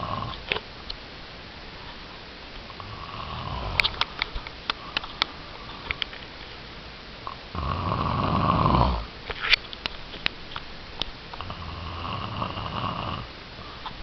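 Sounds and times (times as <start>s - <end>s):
person snoring: 0.0s - 0.4s, 2.8s - 4.0s, 7.5s - 9.1s, 11.4s - 13.3s.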